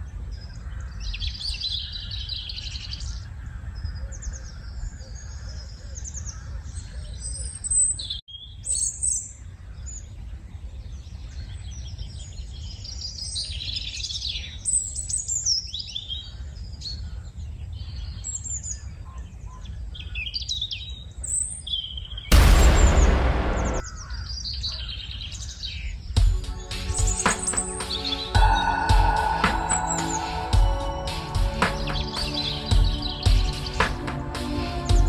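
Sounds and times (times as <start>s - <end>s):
birds chirping and singing: 0.3s - 9.2s, 23.9s - 35.0s
loud rush of noise: 22.3s - 23.8s, 26.5s - 34.2s.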